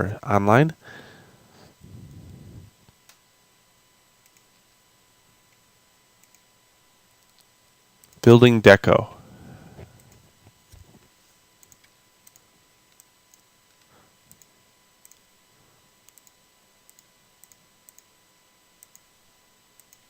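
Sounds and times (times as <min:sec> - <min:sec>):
computer mouse clicks: 0:04.2 - 0:04.5, 0:06.2 - 0:06.5, 0:11.6 - 0:15.3, 0:16.0 - 0:18.1, 0:18.8 - 0:19.1, 0:19.8 - 0:20.0.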